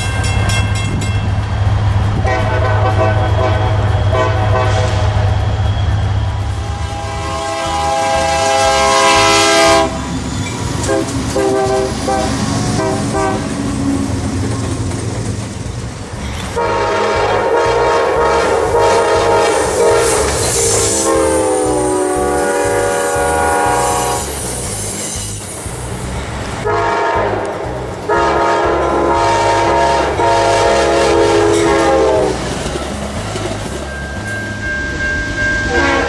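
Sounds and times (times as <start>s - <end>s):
train rumble and clatter: 0.0s - 36.0s
locomotive air horn: 2.2s - 5.7s, 6.5s - 10.1s, 10.8s - 13.6s, 16.5s - 24.6s, 26.6s - 32.6s, 35.5s - 36.0s.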